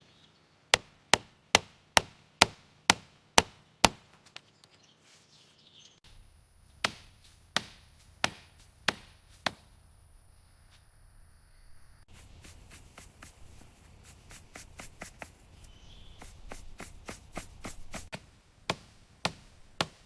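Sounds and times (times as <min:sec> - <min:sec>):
carving tool striking wood: 0:00.8 - 0:04.0.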